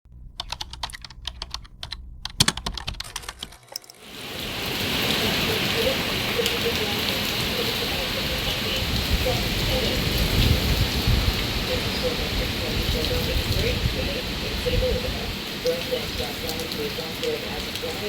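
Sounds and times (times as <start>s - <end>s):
heavy rain pouring: 0.2s - 18.0s
light typing clicks: 0.4s - 3.9s.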